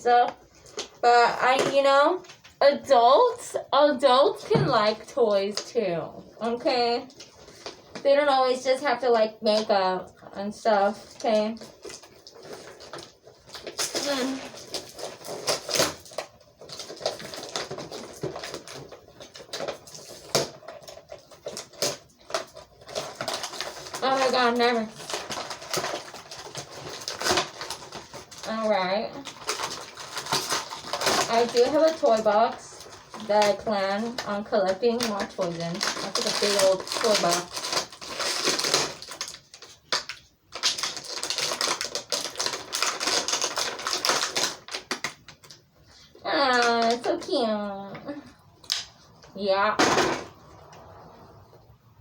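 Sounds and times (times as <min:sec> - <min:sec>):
toy packaging crinkling: 0:00.6 - 0:02.5, 0:04.5 - 0:08.8, 0:10.7 - 0:49.0
packaging snapping: 0:11.6 - 0:45.6.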